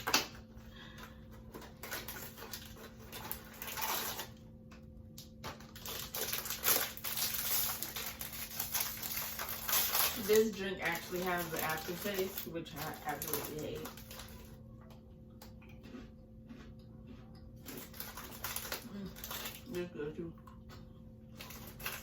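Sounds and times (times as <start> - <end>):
packaging crackling and rustling: 1.0 - 4.4, 5.2 - 14.6, 17.6 - 19.8, 21.3 - 22.0.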